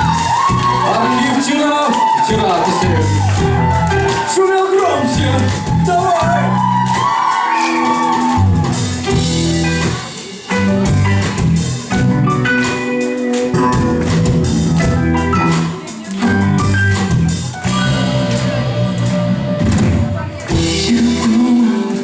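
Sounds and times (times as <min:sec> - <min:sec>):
drum kit: 0:00.0 - 0:22.0
electric guitar chords: 0:07.7 - 0:22.0.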